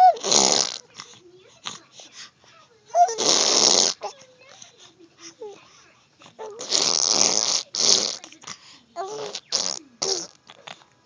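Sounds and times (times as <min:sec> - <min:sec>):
person making fart noises: 0:00.1 - 0:00.8, 0:03.2 - 0:04.0, 0:06.6 - 0:08.2, 0:09.2 - 0:10.4
short squeaky vocal sounds: 0:09.0 - 0:10.8.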